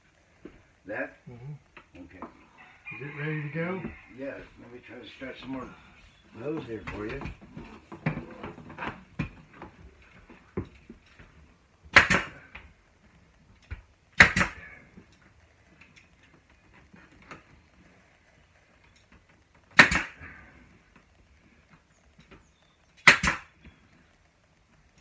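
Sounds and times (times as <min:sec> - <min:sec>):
nail gun firing: 0:11.9 - 0:12.5, 0:14.2 - 0:14.8, 0:19.8 - 0:20.4, 0:23.0 - 0:23.6.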